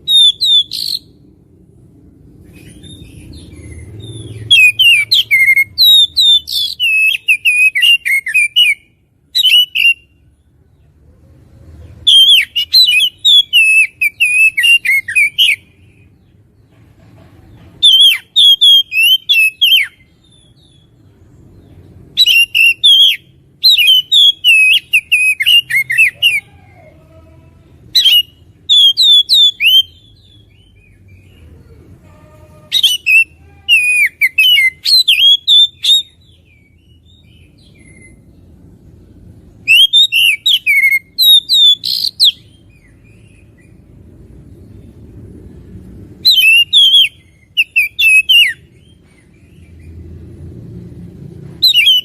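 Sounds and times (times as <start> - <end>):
bird singing whistled phrases: 0.0 - 1.1, 4.0 - 10.1, 12.1 - 15.7, 17.8 - 20.9, 22.2 - 26.4, 28.0 - 31.3, 32.7 - 38.2, 39.6 - 43.6, 46.2 - 48.7, 51.6 - 52.0.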